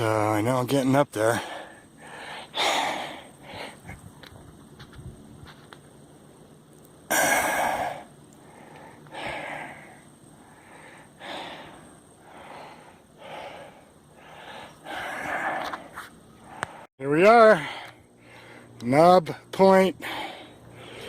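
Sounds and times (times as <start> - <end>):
person breathing hard: 1.3 - 4.0, 7.1 - 16.9, 17.5 - 18.8, 20.0 - 21.0.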